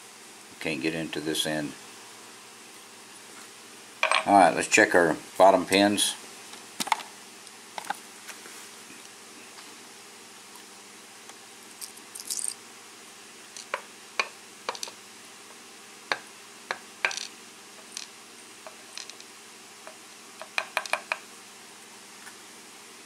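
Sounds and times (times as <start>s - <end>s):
metal parts rattling: 11.8s - 12.6s
small metal parts clicking: 11.8s - 12.6s, 14.7s - 15.0s, 17.9s - 18.1s, 18.7s - 19.3s.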